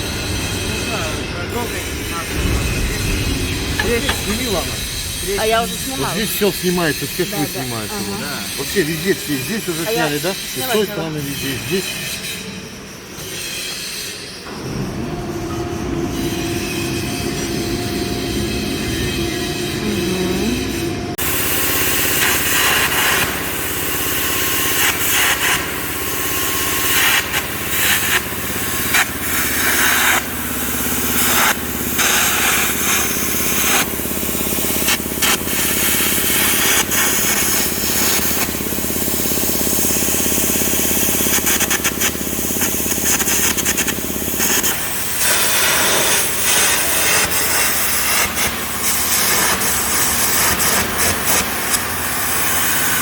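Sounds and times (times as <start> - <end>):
machine hum: 0.0 - 12.2
steel cutting hiss and rasp: 0.4 - 12.5.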